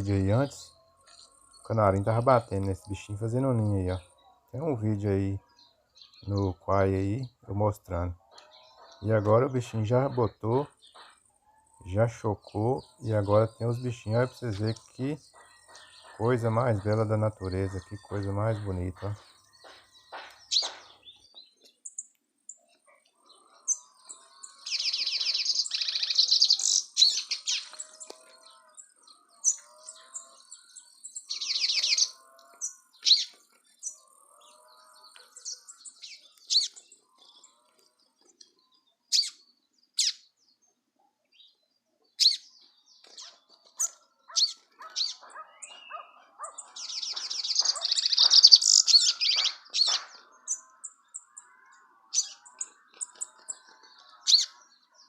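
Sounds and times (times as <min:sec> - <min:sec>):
chicks chirping rapidly: 0:11.8 - 0:21.3, 0:23.2 - 0:34.1, 0:43.2 - 0:51.4, 0:52.1 - 0:55.0.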